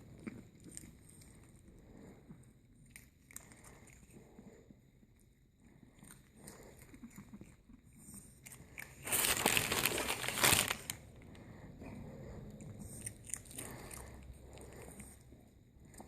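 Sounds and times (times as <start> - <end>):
dog crunching dry cereal: 8.2 - 11.1, 12.8 - 15.1.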